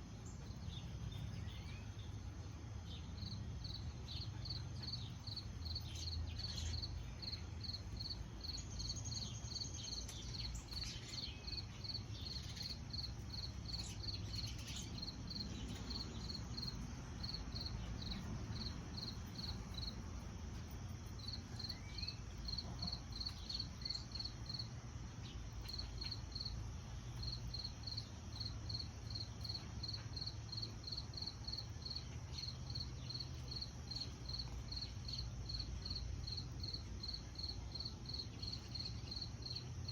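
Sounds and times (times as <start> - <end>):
cricket chirping: 0.0 - 39.9.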